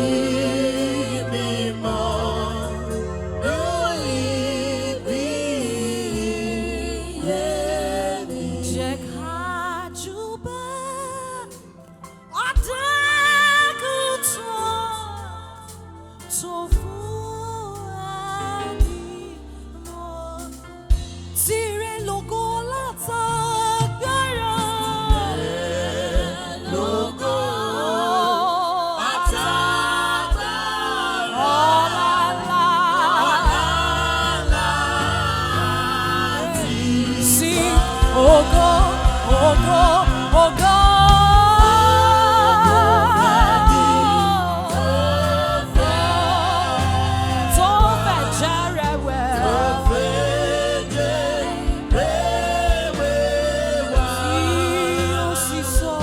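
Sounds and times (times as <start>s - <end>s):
gospel singing with vibrato: 0.0s - 56.0s
group of singers: 0.0s - 56.0s
instrumental backing with beat: 29.2s - 56.0s.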